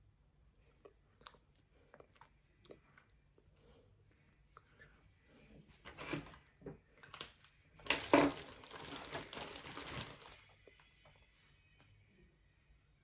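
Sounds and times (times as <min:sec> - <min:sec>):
crinkling and rustling: 0:05.8 - 0:11.2.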